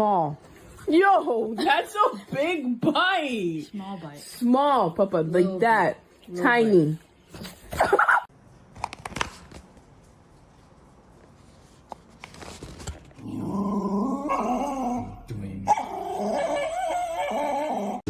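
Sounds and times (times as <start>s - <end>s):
dog long wavering vocalizing: 13.3s - 18.0s.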